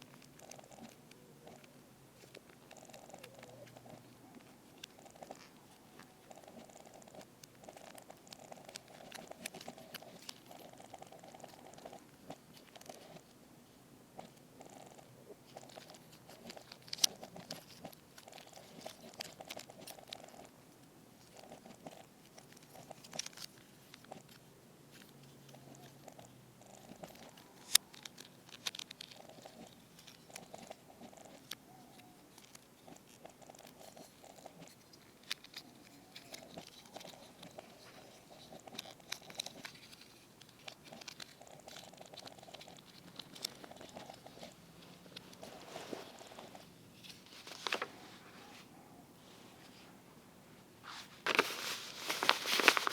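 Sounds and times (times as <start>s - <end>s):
plastic figure rubbing and scraping: 32.4s - 50.0s, 50.8s - 52.9s.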